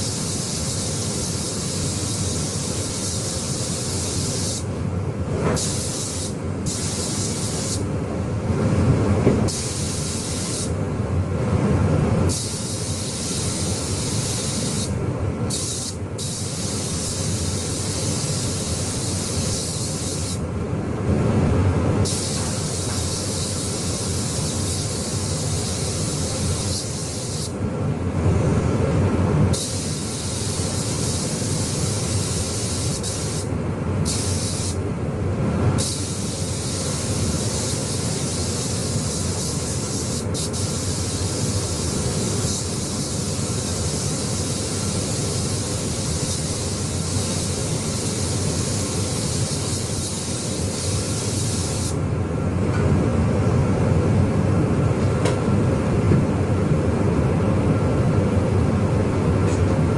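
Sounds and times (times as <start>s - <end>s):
paint spray gun hissing: 0.0s - 4.7s, 5.6s - 7.8s, 9.5s - 10.7s, 12.3s - 20.4s, 22.0s - 27.6s, 29.5s - 34.8s, 35.8s - 52.0s.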